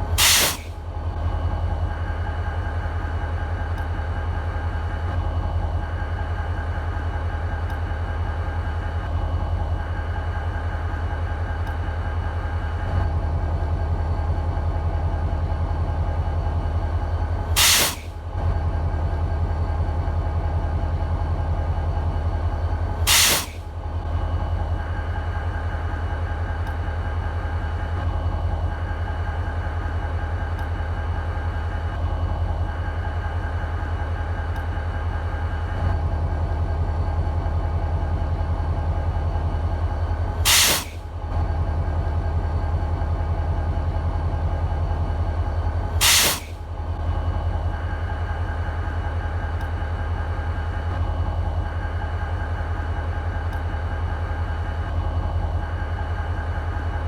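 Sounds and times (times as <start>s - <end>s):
diesel locomotive idling: 0.0s - 57.0s
short loud hiss: 0.2s - 0.7s, 17.6s - 18.1s, 23.1s - 23.6s, 40.5s - 41.0s, 46.0s - 46.6s.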